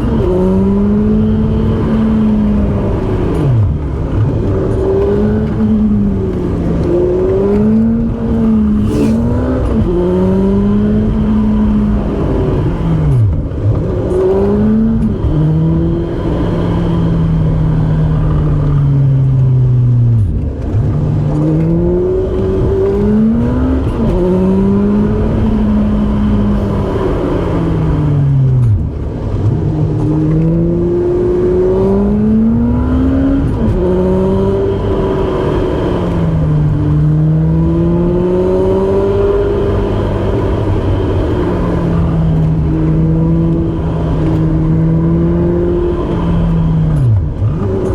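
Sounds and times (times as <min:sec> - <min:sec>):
car engine revving: 0:00.0 - 0:47.9.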